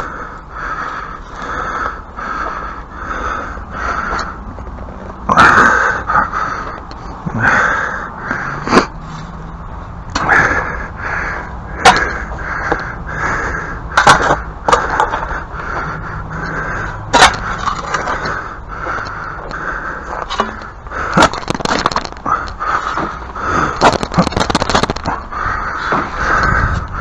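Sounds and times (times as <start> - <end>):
hand tool scraping root: 16.4 - 18.4, 20.2 - 25.2.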